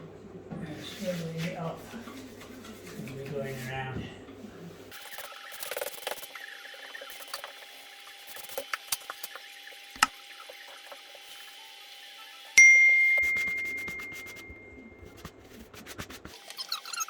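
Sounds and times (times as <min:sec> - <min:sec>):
sharp ringing ding: 0:12.6 - 0:14.8.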